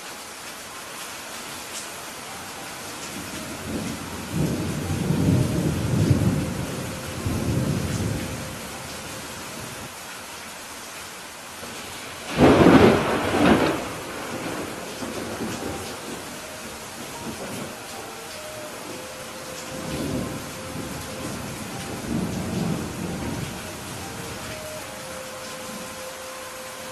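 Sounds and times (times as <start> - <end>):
heavy rain: 0.0 - 26.9
thunder rumbling: 3.2 - 9.9, 12.2 - 26.1
loud thunderclap: 12.3 - 16.3.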